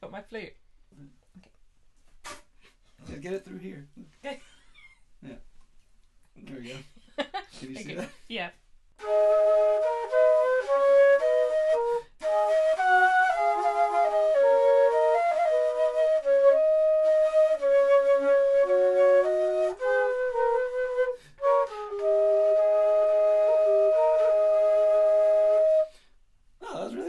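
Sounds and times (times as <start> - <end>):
two flutes playing in harmony: 9.0 - 26.1.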